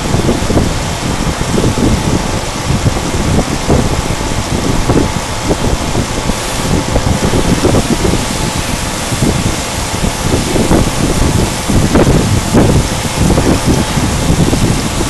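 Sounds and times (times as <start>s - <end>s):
low rumbling: 0.0s - 15.0s
faint whine: 5.9s - 15.0s.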